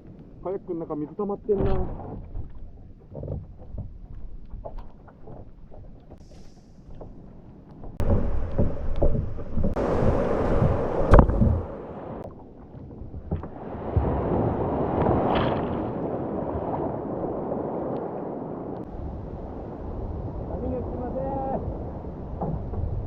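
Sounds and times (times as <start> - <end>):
water rushing and splashing: 4.1 - 23.0
knocks: 8.0 - 11.8.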